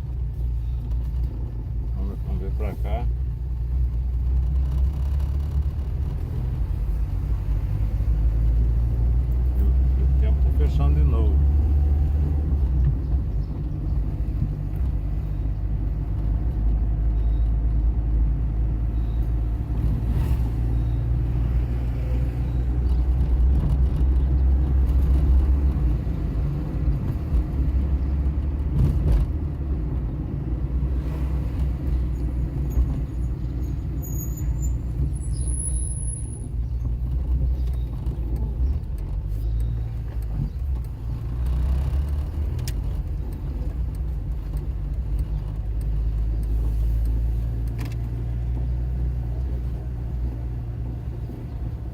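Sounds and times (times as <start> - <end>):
car engine and road noise: 0.0 - 51.9.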